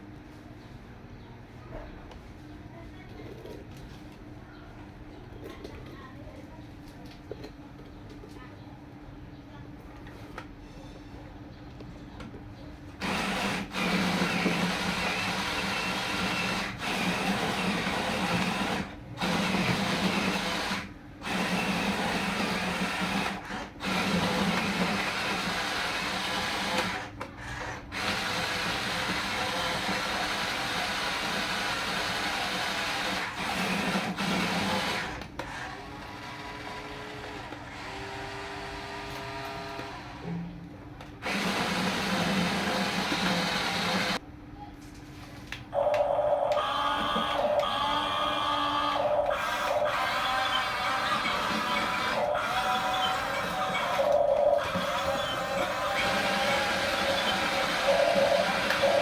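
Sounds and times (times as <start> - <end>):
electric motor and gearbox whirring: 13.0 - 40.4, 41.2 - 44.2, 45.8 - 59.0.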